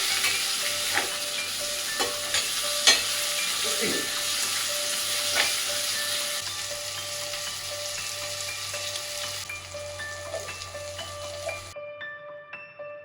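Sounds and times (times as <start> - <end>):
food sizzling in a pan: 0.0 - 11.8
soft piano music: 0.0 - 13.0.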